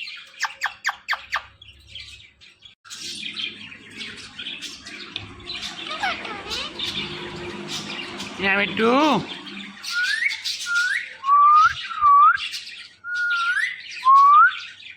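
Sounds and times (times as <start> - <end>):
parrot chirping: 0.0 - 2.2, 2.9 - 14.0
parrot chattering and squawking: 4.0 - 11.2.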